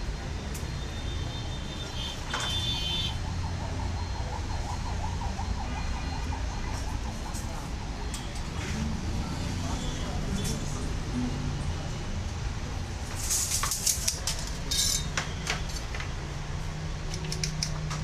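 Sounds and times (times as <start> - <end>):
wavering siren-like tone: 2.7 - 10.2.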